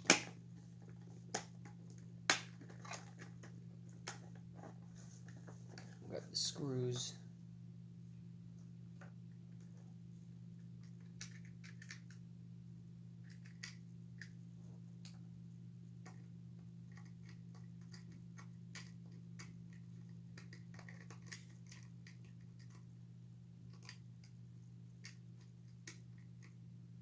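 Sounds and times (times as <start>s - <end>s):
steady low hum: 0.0s - 27.0s
clicks of small parts handled: 13.2s - 14.3s.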